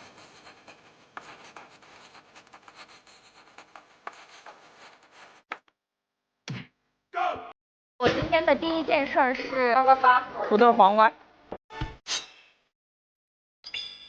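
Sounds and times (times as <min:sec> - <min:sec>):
hands scratching and tapping: 0:00.4 - 0:05.5.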